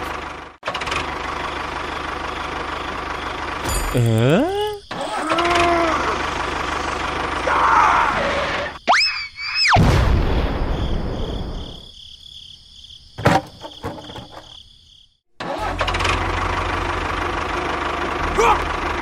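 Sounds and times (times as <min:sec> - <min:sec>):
small engine running: 0:00.0 - 0:08.8, 0:15.4 - 0:19.0.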